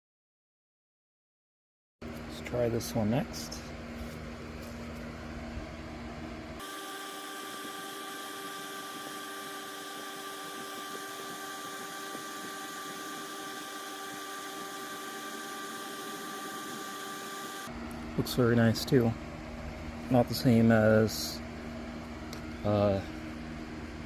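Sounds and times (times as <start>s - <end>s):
machine hissing and whining: 6.4s - 21.4s.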